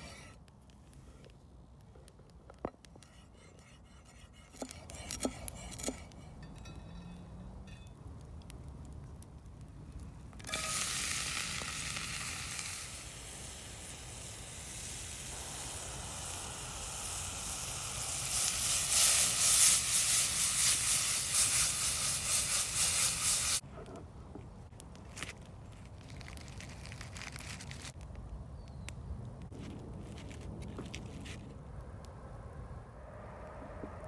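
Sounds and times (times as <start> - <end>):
food sizzling in frying: 10.5 - 23.6.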